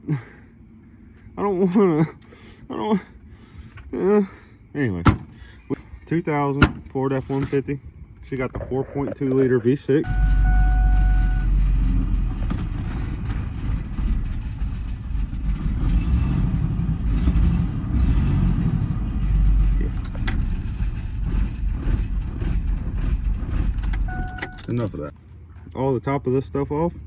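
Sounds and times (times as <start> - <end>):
truck engine rumbling unevenly: 0.1 - 27.0
electronic chime tone: 10.1 - 11.5, 24.1 - 24.8.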